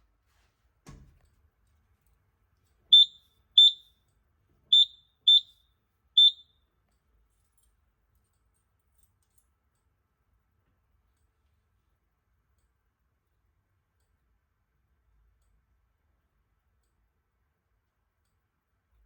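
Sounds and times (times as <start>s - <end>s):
fire alarm panel high-pitched beeps: 2.9s - 3.9s, 4.7s - 5.6s, 6.2s - 6.6s.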